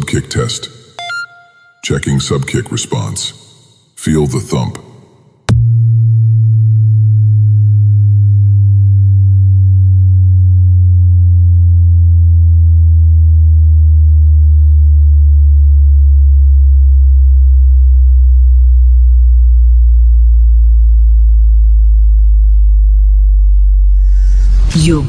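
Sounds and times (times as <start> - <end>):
low bass tone gliding downward: 5.5 - 25.0.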